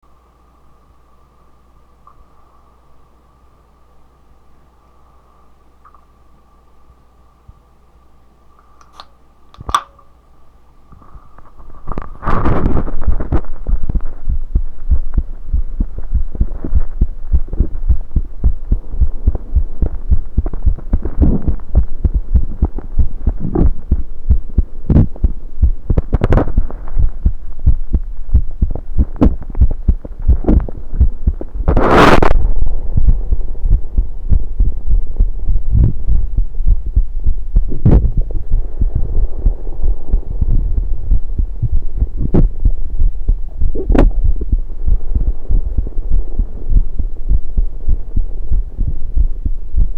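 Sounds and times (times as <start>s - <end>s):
constant low hum: 0.0s - 49.9s
sharp clicks: 8.8s - 10.1s
heartbeat thumps: 11.9s - 49.9s.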